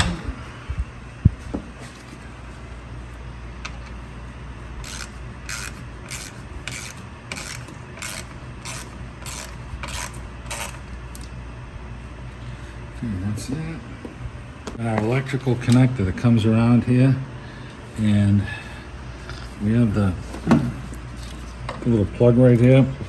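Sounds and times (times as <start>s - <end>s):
ratchet wrench ratcheting: 4.8s - 10.8s.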